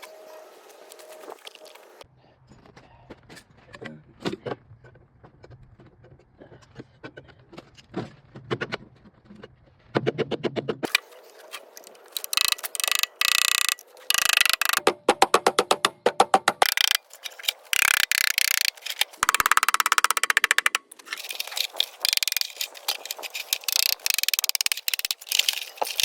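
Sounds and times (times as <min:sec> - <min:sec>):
metal tool clicks and clatter: 0:10.9 - 0:14.8, 0:16.6 - 0:26.0
fast run of even clicks: 0:11.8 - 0:14.8, 0:16.5 - 0:26.0.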